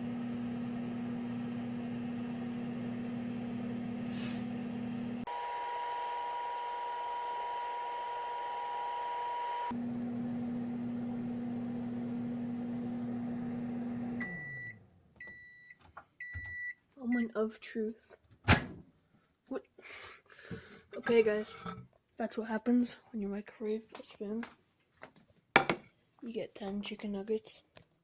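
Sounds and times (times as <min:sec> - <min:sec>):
microwave oven humming: 0:00.0 - 0:15.4
microwave beep: 0:14.1 - 0:17.3.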